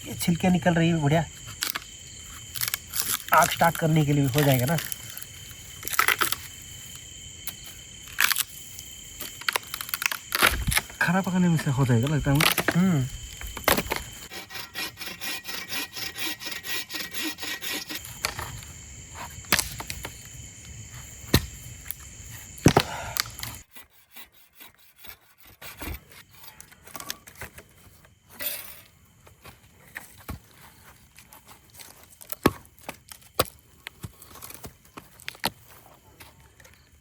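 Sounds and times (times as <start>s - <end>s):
blade shaving wood: 9.4s - 19.9s, 22.3s - 26.8s.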